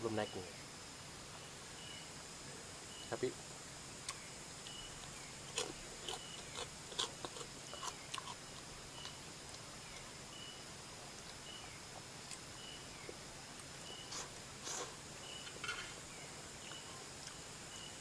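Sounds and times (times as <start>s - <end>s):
insect chirping: 0.0s - 18.0s
insects buzzing: 0.0s - 18.0s
chewing or slurping: 5.0s - 9.6s, 13.6s - 15.0s.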